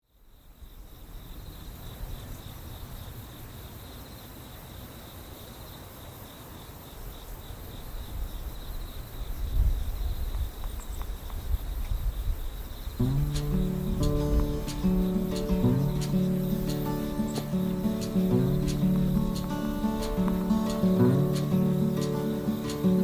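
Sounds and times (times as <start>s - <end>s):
crickets trilling: 0.0s - 23.0s
faint clicks: 13.0s - 23.0s.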